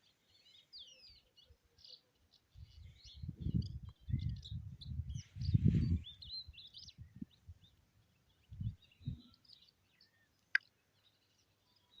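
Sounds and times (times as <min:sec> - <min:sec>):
small birds chirping: 0:00.0 - 0:12.0.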